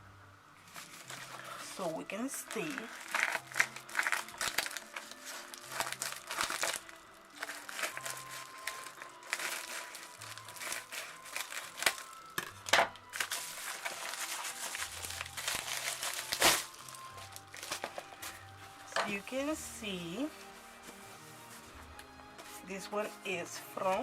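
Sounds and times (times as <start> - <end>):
soft background music: 0.0 - 24.0
packaging crinkling and rustling: 0.6 - 22.7.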